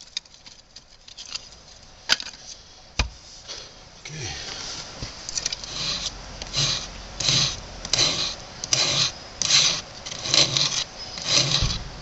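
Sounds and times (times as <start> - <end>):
knife scraping wood: 5.5 - 11.8.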